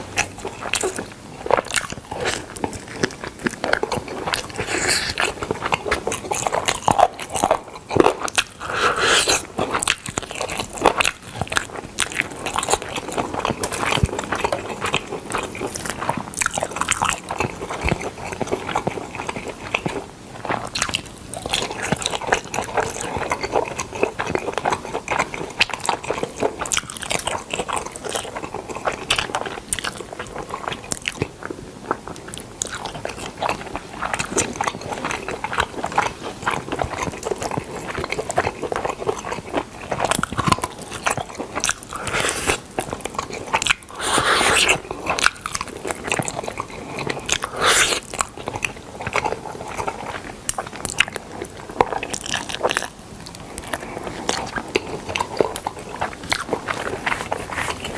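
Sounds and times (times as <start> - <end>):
wet chewing and biting: 0.0 - 57.9.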